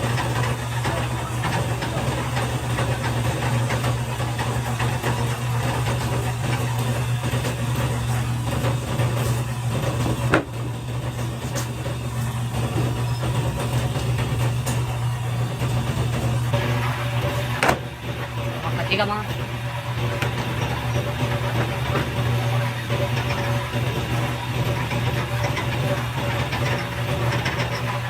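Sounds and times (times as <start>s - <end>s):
machine humming: 0.0s - 28.0s.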